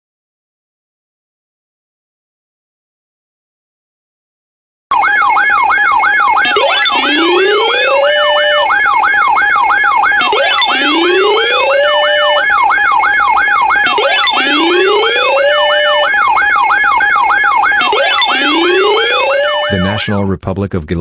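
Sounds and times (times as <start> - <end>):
fast yelping siren: 4.9 - 20.1
slow rising siren: 4.9 - 20.1
steady alarm tones: 4.9 - 20.2.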